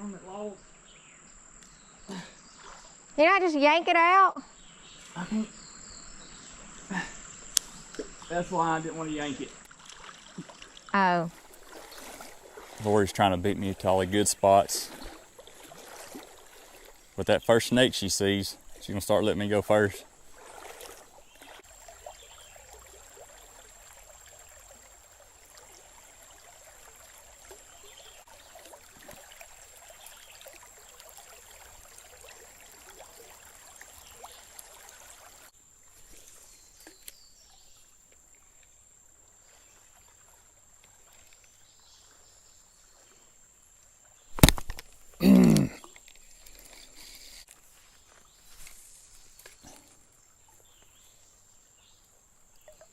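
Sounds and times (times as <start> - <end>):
outdoor background noise: 0.0 - 52.9
creek water rushing: 4.9 - 36.5.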